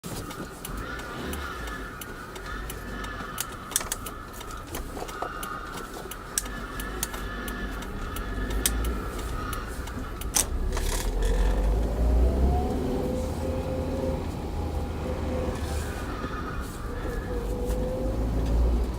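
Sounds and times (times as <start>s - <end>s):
sharp clicks and rattles: 0.0s - 18.9s
car engine low rumble: 0.1s - 18.9s
whine rising in pitch: 9.9s - 15.9s.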